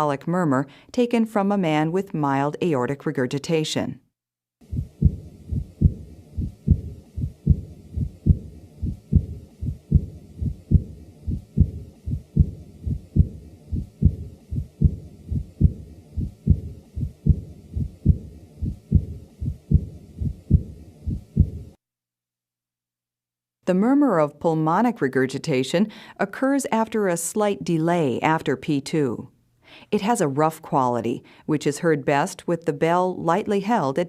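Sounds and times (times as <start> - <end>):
heartbeat: 4.6 - 21.8
soft heart murmur: 4.6 - 21.8.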